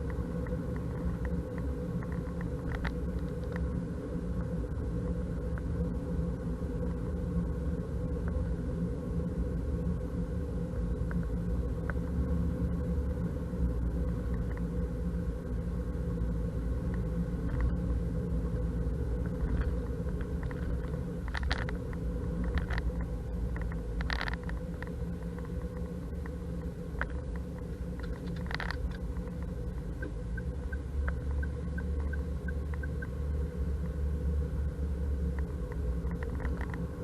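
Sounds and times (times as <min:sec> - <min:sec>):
vehicle engine and road rumble: 0:00.0 - 0:37.0
camera rattle: 0:20.4 - 0:21.8, 0:28.0 - 0:29.0.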